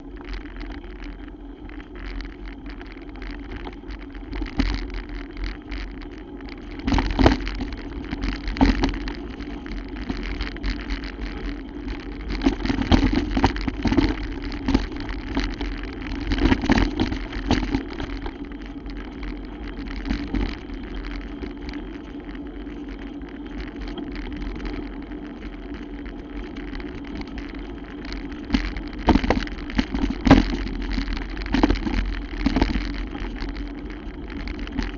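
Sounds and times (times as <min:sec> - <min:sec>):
bicycle knocks and rattles: 0:00.0 - 0:34.9
bicycle riding on muddy trail: 0:00.0 - 0:34.9.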